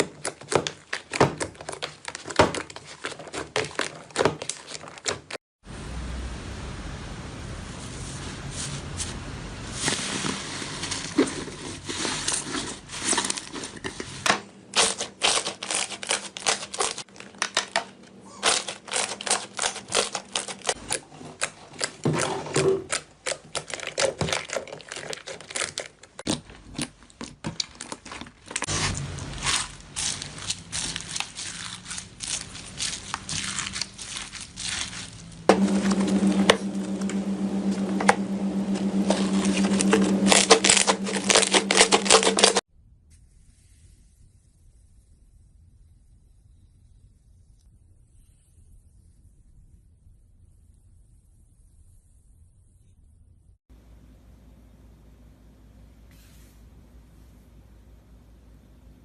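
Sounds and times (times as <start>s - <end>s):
steady low hum: 35.4s - 42.6s.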